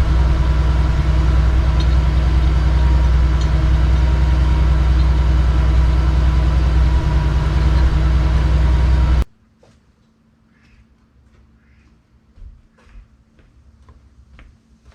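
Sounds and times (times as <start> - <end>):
engine idling: 0.0 - 9.3.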